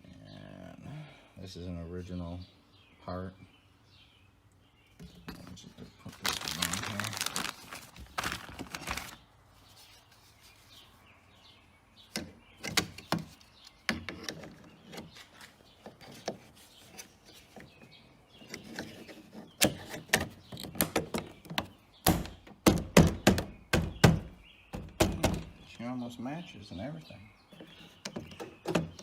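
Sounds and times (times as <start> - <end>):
light rubbing of plastic: 5.2 - 11.1, 12.9 - 20.6.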